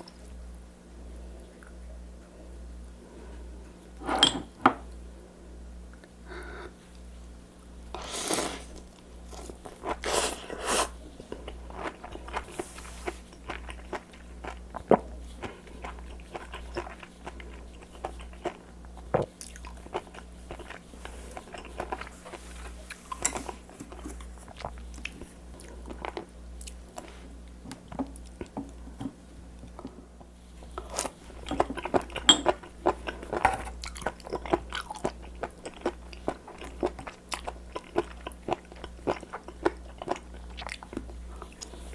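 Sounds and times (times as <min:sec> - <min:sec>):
low electrical hum: 0:00.0 - 0:41.9
chewing crisp seafood: 0:30.6 - 0:41.9.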